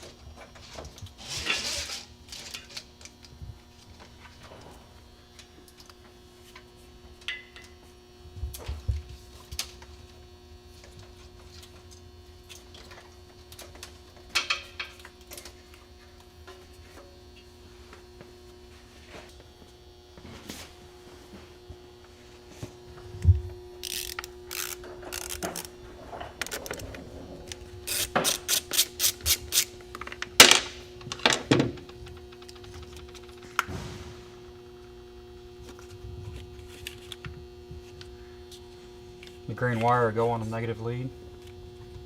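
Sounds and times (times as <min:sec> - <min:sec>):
steady low hum: 0:00.0 - 0:42.0
zip ties ratcheting clicks: 0:23.8 - 0:25.7, 0:27.9 - 0:29.7.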